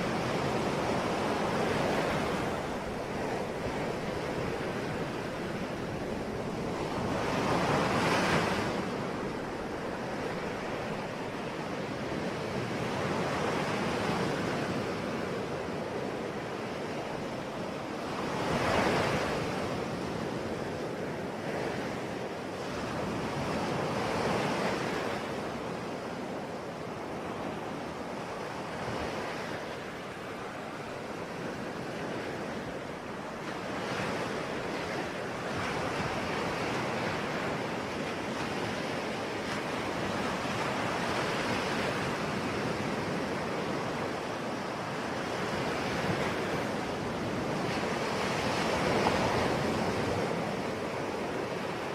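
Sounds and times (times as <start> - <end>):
ocean waves breaking: 0.0 - 51.9.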